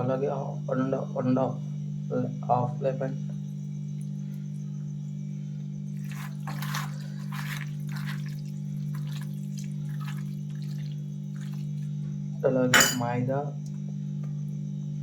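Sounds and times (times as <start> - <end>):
lemon juice squirting and dripping: 6.0 - 12.0.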